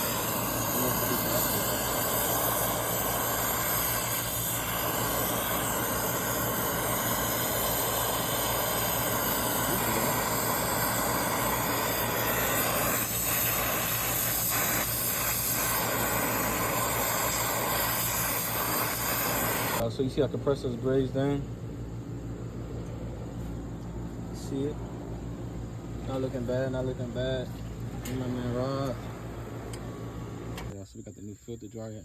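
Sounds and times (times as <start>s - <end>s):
torch flame hissing: 0.0s - 19.8s
low hum: 0.0s - 30.7s.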